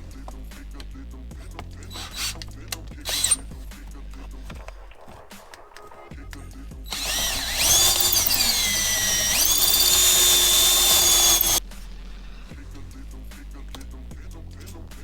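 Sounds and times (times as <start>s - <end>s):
power drill running: 3.1s - 3.4s, 6.9s - 11.6s.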